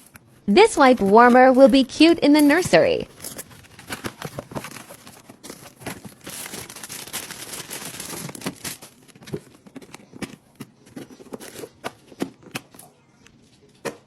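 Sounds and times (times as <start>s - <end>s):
plastic packaging crinkling: 2.6s - 11.9s.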